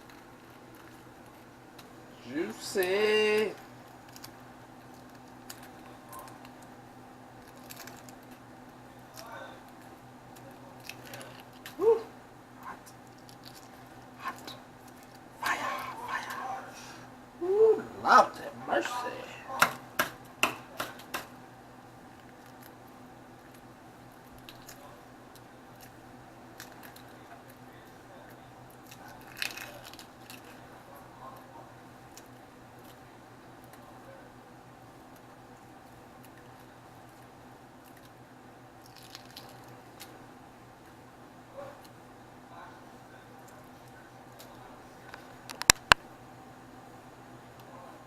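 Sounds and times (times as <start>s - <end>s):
steady low hum: 0.0s - 48.0s
shrimp shell clicks and crackles: 3.8s - 11.8s, 12.9s - 15.3s, 22.1s - 30.7s, 35.1s - 40.2s, 43.4s - 46.0s.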